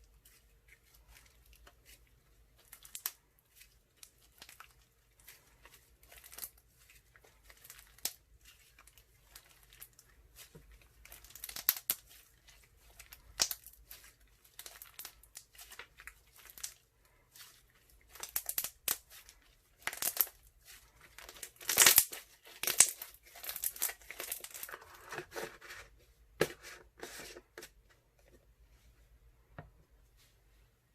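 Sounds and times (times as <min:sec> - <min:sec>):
slime crackling and popping: 0:02.6 - 0:24.7.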